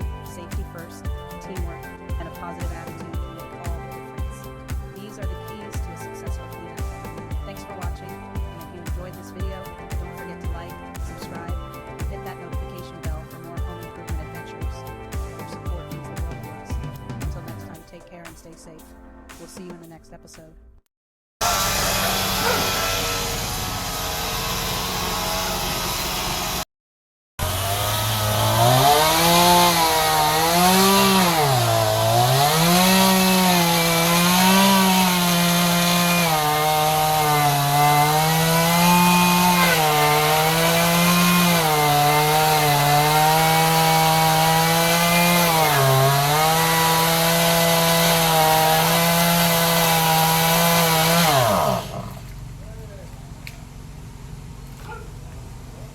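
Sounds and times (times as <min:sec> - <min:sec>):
chainsaw cutting wood: 0:00.0 - 0:17.8, 0:21.4 - 0:26.6, 0:27.4 - 0:52.5.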